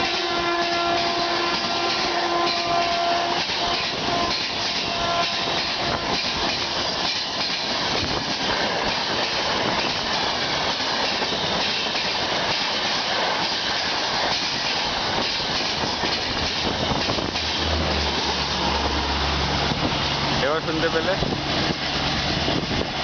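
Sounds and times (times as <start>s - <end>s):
train horn: 0.0s - 6.1s
train passing at speed: 0.0s - 23.0s.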